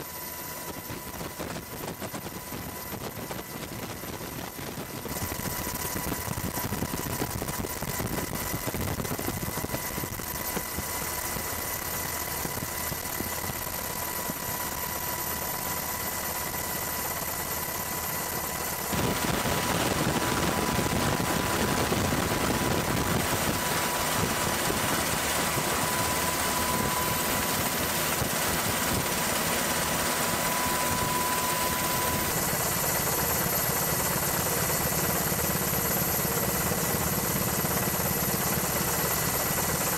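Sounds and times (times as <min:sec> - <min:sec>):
faint high tone: 0:25.1 - 0:27.8, 0:30.2 - 0:32.4.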